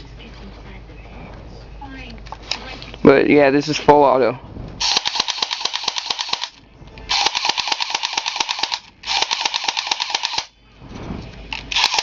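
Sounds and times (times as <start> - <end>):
airsoft pistol firing full auto: 4.8 - 10.5, 11.7 - 12.0.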